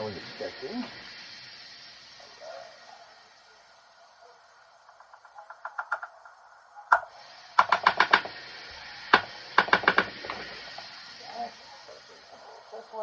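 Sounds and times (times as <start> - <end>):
utensil tapping against cookware: 9.2 - 10.1.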